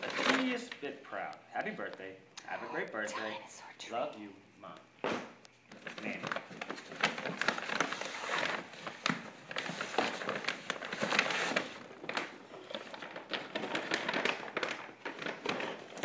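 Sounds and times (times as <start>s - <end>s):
wrapping paper crinkling: 0.0s - 1.9s, 5.6s - 16.0s.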